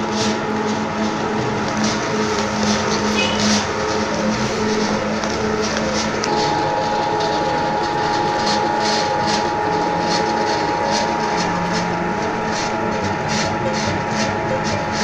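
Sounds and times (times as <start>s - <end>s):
mechanical rumble: 0.0s - 15.0s
shredder high whine: 0.0s - 15.0s
plastic crackling as chopped: 1.6s - 4.0s.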